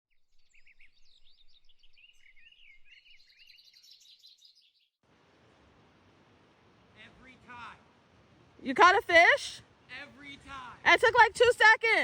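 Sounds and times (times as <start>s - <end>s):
songbird singing: 0.1s - 5.0s
steady hiss: 5.1s - 10.8s.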